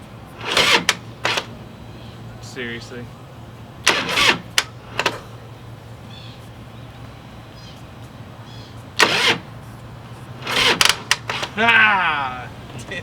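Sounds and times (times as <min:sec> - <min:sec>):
motorcycle starter burst: 0:00.4 - 0:01.5, 0:03.8 - 0:05.2, 0:09.0 - 0:09.5, 0:10.4 - 0:11.7.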